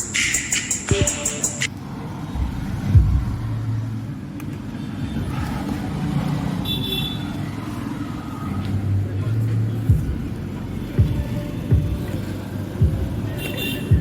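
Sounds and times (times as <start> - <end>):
bass-heavy music: 0.0 - 1.7, 2.4 - 4.0, 9.0 - 14.0
low bass rumble from woofer: 2.4 - 3.9.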